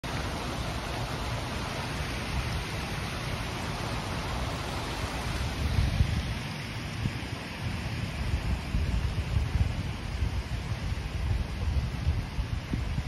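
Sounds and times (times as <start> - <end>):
water pouring and splashing: 0.0 - 13.0
wind buffeting microphone: 0.1 - 13.0.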